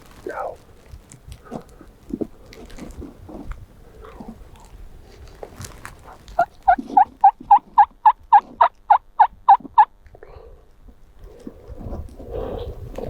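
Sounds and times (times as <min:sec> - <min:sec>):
faint rustling: 0:00.0 - 0:07.8
turkey yelping: 0:06.0 - 0:09.9.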